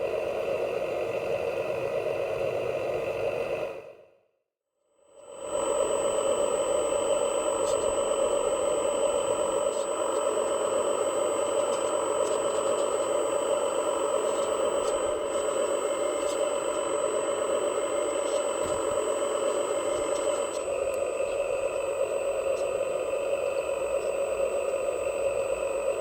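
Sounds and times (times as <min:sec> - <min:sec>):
model truck motor humming: 0:05.6 - 0:26.0.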